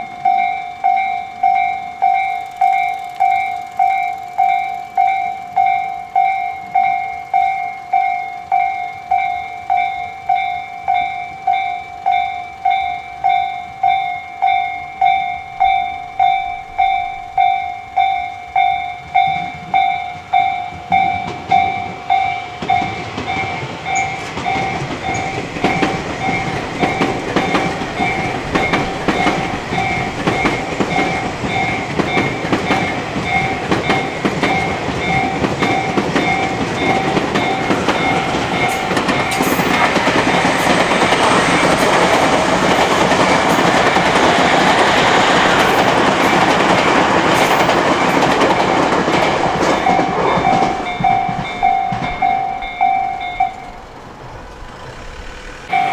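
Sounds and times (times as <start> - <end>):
electric train passing: 0.0 - 55.9
level crossing warning bell: 0.0 - 55.9
wheel clatter over rail joints: 0.0 - 55.9.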